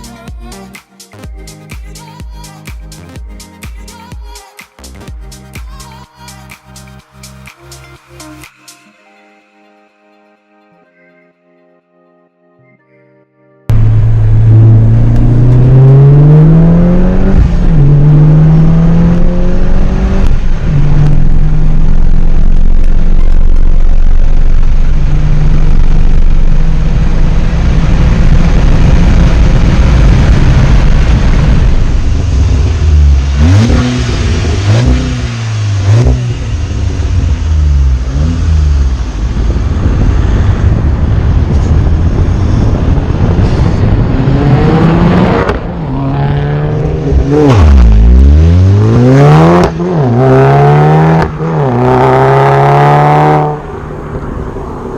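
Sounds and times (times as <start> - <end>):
car engine revving: 13.7 - 54.9.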